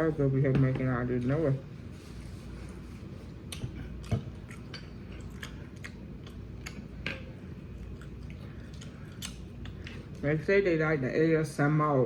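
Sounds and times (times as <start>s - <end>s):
person chewing food: 2.5s - 10.2s.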